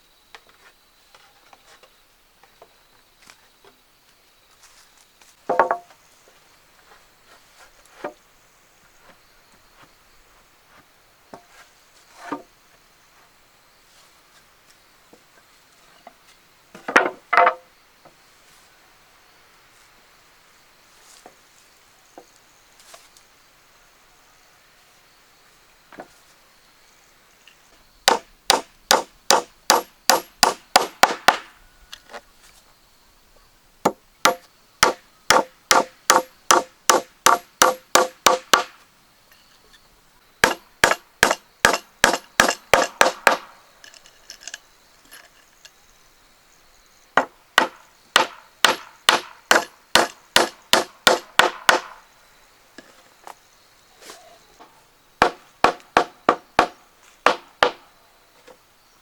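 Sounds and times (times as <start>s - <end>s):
hand tool striking wood: 5.5s - 6.0s, 16.8s - 17.6s, 28.1s - 31.5s, 33.8s - 38.8s, 40.4s - 44.6s, 47.2s - 52.0s, 55.2s - 57.8s.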